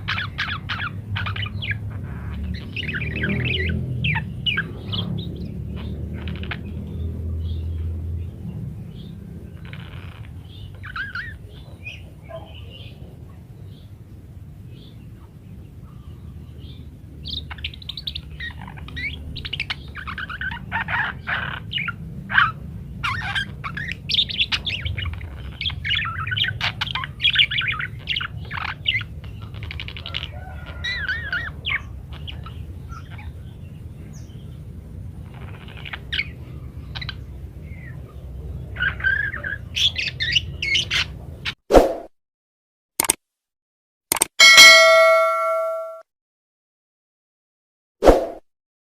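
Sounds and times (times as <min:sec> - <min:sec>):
budgerigars chattering: 0:00.0 - 0:06.8, 0:17.3 - 0:33.6
low hum: 0:44.4 - 0:46.0.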